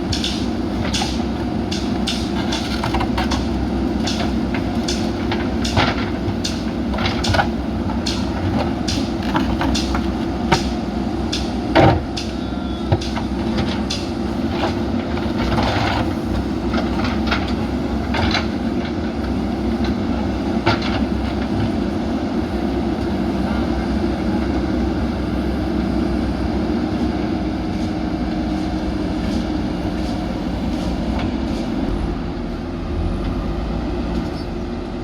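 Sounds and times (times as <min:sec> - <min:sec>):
sharp clanks and knocks: 0:00.0 - 0:18.6
diesel engine running under load: 0:00.0 - 0:35.0.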